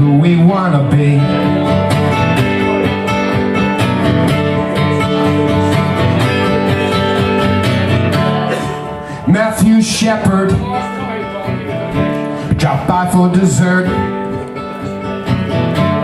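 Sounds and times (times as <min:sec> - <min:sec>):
person singing: 0:00.0 - 0:15.4
acoustic guitar strumming: 0:00.0 - 0:16.0.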